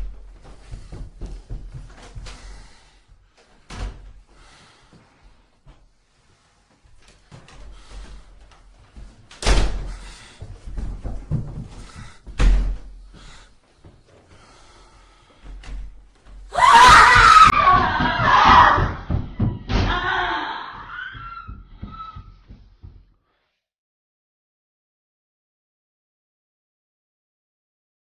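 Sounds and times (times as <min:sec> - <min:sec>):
heavy door slams: 0:09.4 - 0:10.2, 0:12.3 - 0:12.9
loud wavering scream: 0:16.5 - 0:19.1, 0:19.8 - 0:22.2
knocks: 0:17.6 - 0:20.2.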